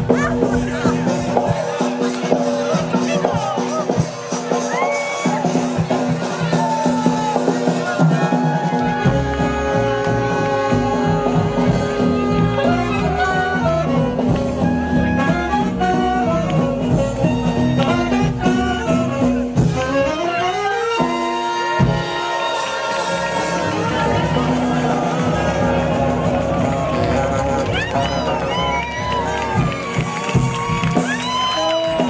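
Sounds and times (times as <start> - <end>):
swing jazz band playing: 0.0 - 32.0
horns playing rising run: 7.2 - 32.0.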